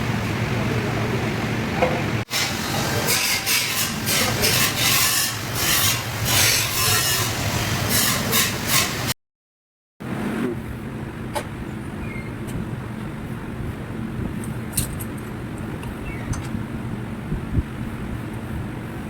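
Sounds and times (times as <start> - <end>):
hand sanding car bodywork: 3.0 - 6.2.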